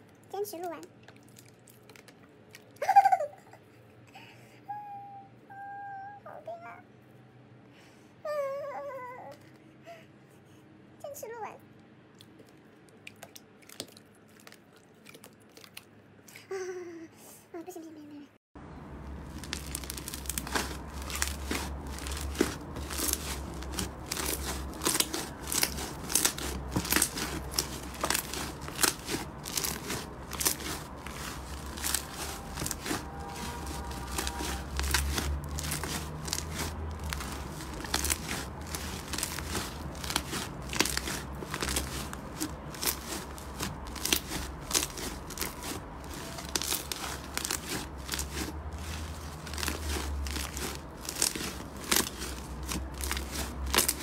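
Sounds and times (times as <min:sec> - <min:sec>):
crunchy slime crackling: 0:00.5 - 0:02.8, 0:12.2 - 0:15.9, 0:18.9 - 0:54.0.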